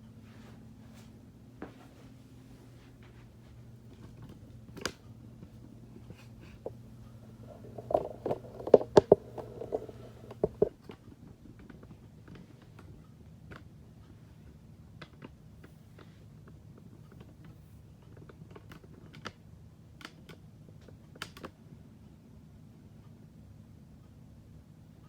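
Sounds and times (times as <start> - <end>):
plastic parts clicking: 7.4 - 10.7.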